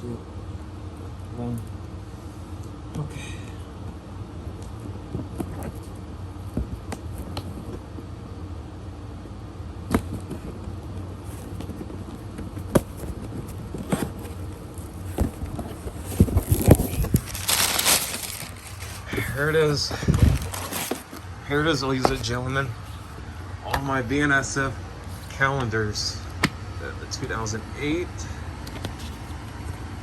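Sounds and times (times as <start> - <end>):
steady low hum: 0.0 - 30.0
packaging crinkling and rustling: 11.3 - 21.3.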